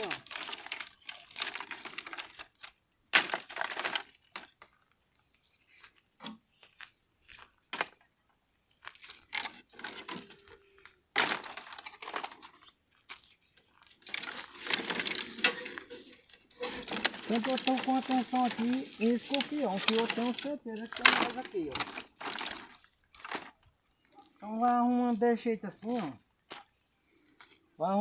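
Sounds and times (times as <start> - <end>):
dry branches crunching and cracking: 0.0 - 5.0, 8.8 - 24.9, 25.7 - 26.8.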